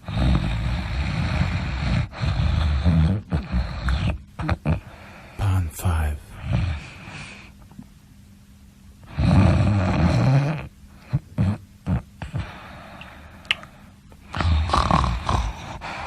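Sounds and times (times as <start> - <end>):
short snorts: 0.0 - 5.1, 9.0 - 16.0
person snoring: 0.0 - 7.4, 9.1 - 13.2, 14.3 - 16.0.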